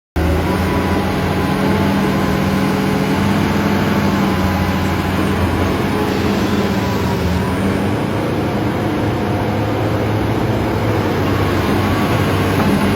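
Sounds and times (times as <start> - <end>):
excavator diesel engine running: 0.2 - 12.9.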